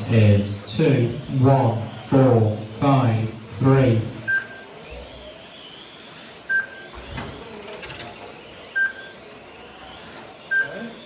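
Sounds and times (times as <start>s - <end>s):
electric rc cars whining: 0.0s - 11.0s
short timing beeps: 4.2s - 4.6s, 6.5s - 6.9s, 8.8s - 9.1s, 10.5s - 10.8s.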